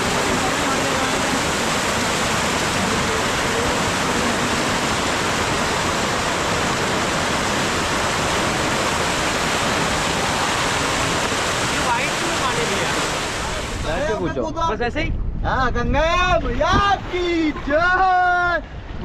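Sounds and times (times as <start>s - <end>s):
river water rushing: 0.0s - 14.2s.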